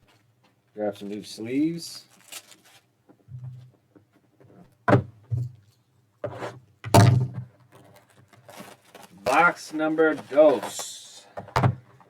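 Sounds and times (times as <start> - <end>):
card box scraping and knocking: 6.2 - 7.4.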